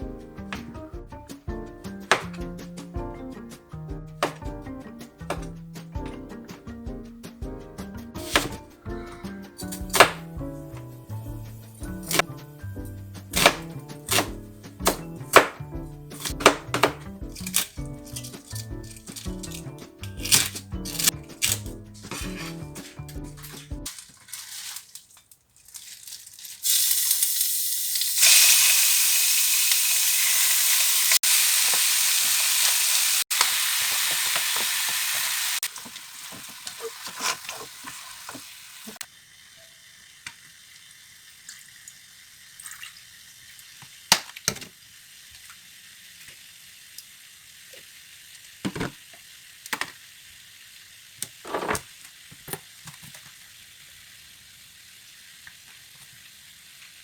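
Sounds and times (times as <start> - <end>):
food sizzling in a hot pan: 11.1 - 14.2, 20.2 - 24.9, 25.8 - 57.0
faint sizzle: 21.4 - 57.0.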